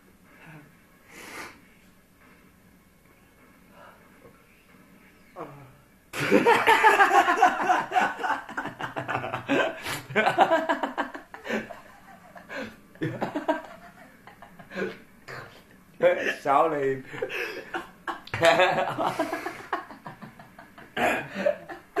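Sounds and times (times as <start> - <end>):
person laughing: 6.2 - 15.0.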